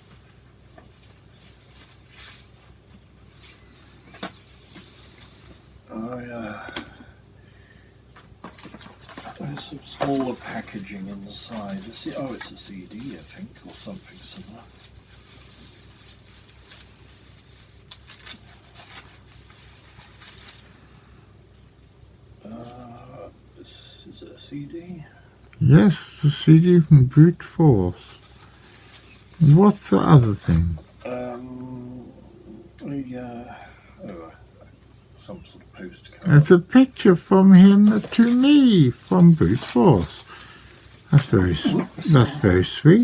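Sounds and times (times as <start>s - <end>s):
packaging rustling: 8.5s - 20.8s, 28.0s - 30.3s, 37.8s - 42.1s
wrapping ripping: 10.3s - 20.7s, 37.8s - 42.1s.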